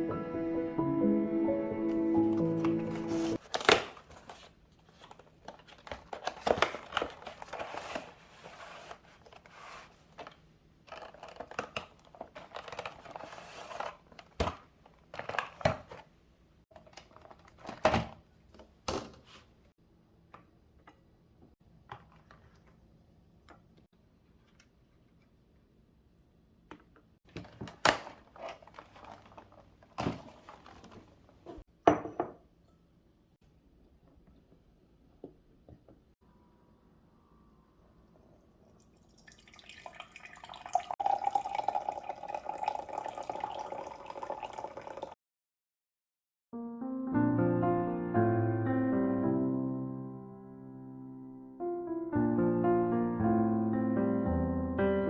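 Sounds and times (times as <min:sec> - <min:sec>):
packaging rustling and crinkling: 0:02.8 - 0:16.0, 0:16.7 - 0:18.2, 0:27.3 - 0:31.4.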